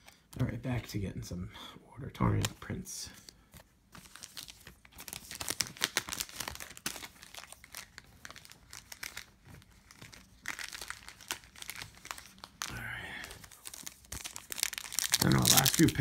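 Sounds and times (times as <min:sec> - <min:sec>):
wrapper crinkling and tearing: 0:03.9 - 0:16.0.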